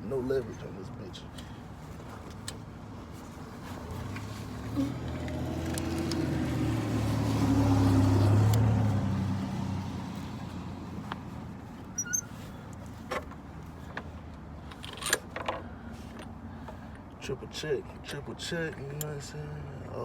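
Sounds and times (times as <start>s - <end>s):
vehicle passing by: 3.6s - 11.8s.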